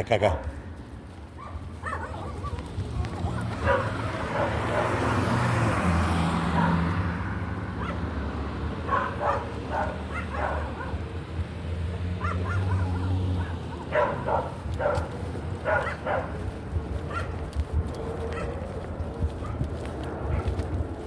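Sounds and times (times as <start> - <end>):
dog yipping and whining: 1.4 - 2.6.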